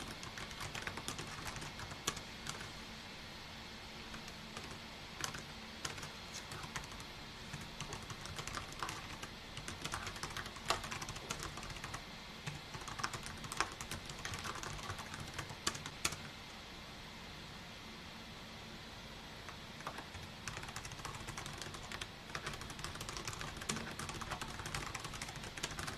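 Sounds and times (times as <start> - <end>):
computer keyboard typing: 0.0 - 2.7, 4.1 - 16.3, 19.5 - 25.9.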